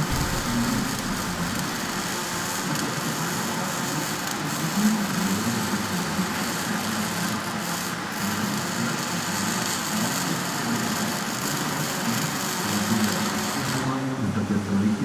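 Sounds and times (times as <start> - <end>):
low hum: 0.0 - 3.0.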